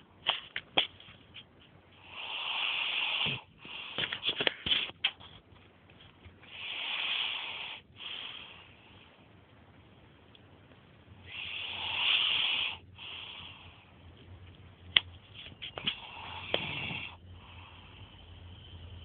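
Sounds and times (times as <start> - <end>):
person snoring: 16.0 - 17.6.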